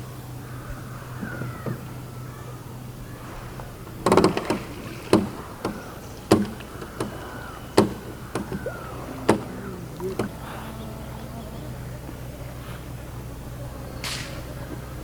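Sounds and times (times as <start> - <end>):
steady low hum: 0.0 - 15.0
sharp knocks and clicks: 3.2 - 10.4.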